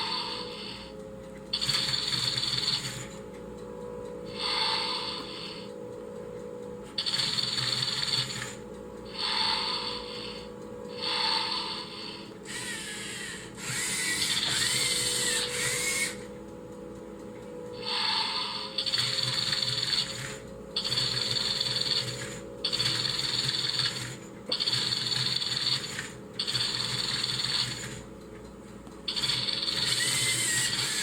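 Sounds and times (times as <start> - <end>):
servo motors whirring: 12.5 - 16.2.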